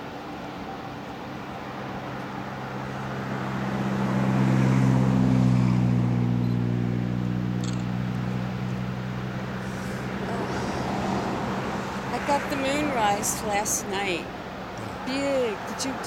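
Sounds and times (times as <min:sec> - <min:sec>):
vehicle engine passing by: 0:02.8 - 0:13.5.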